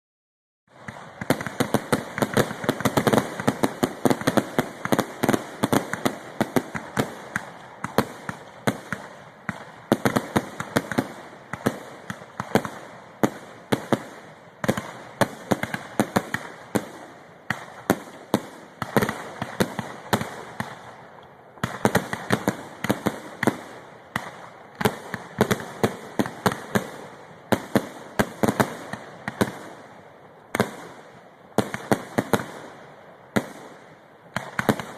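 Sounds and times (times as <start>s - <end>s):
fireworks barrage bangs: 0.7s - 29.9s, 30.5s - 34.9s
fireworks crackling: 0.7s - 34.9s.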